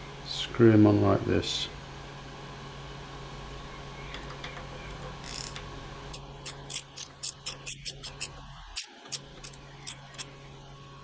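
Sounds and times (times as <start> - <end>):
socket ratchet clicking: 5.2 - 10.3.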